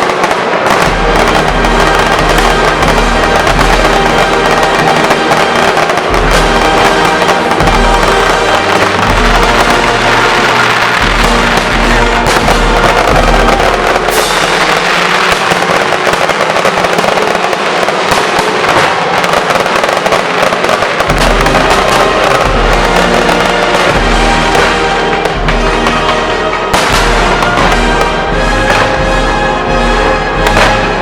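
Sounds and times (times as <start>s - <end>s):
fireworks bursting and crackling: 0.0s - 31.0s
music with pulsing bass: 6.0s - 14.4s, 21.1s - 31.0s.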